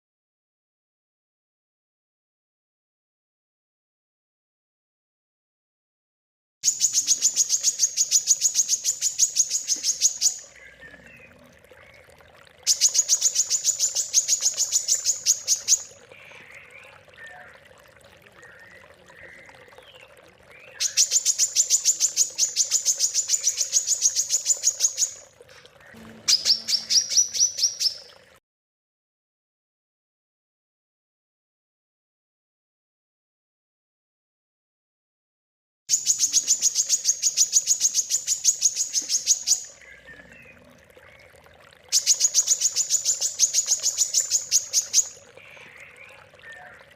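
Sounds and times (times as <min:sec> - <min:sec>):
soft bird chirps: 0:06.6 - 0:28.2, 0:35.9 - 0:46.9
songbird high-pitched trills: 0:25.8 - 0:28.1.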